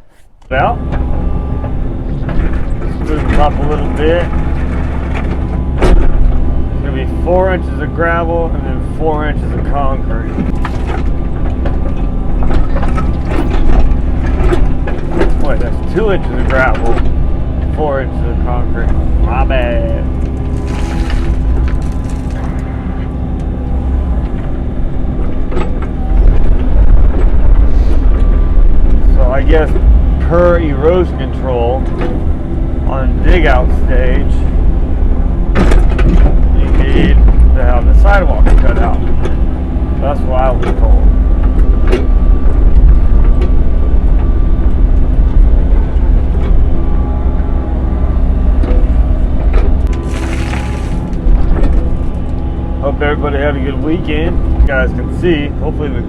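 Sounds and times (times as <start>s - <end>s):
excavator engine rumbling: 0.0s - 56.0s
hydraulic whine: 0.0s - 56.0s
short rush of noise: 50.0s - 51.2s.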